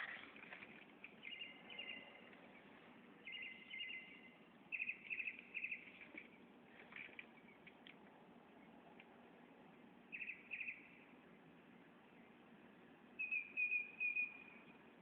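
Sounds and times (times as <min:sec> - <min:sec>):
mockingbird singing: 0:01.2 - 0:06.4, 0:10.1 - 0:11.0, 0:13.2 - 0:14.7.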